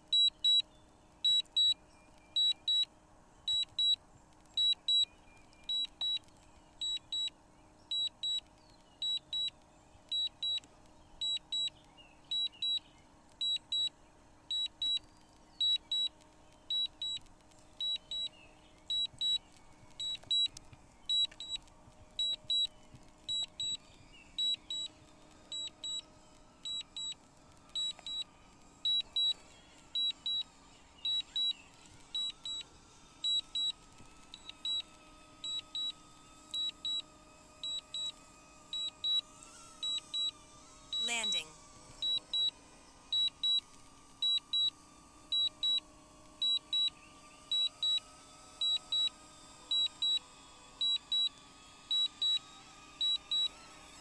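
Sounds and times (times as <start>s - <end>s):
faint steady hum: 0.0s - 54.0s
controller warning beeps: 0.1s - 0.7s, 1.3s - 2.9s, 3.5s - 4.0s, 4.6s - 6.2s, 6.8s - 10.6s, 11.2s - 12.8s, 13.4s - 15.0s, 15.6s - 17.2s, 17.8s - 19.4s, 20.0s - 20.5s, 21.1s - 21.6s, 22.2s - 23.8s, 24.4s - 27.2s, 27.8s - 28.3s, 28.9s - 29.4s, 30.0s - 31.6s, 32.2s - 32.6s, 34.4s - 36.0s, 36.6s - 38.2s, 38.8s - 42.5s, 43.2s - 48.0s, 51.9s - 53.6s.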